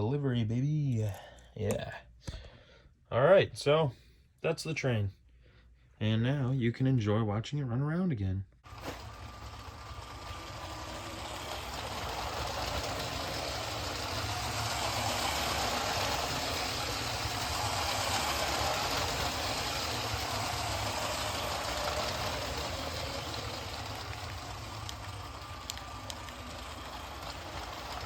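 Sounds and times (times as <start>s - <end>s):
toy train motor whirring: 8.6s - 28.0s.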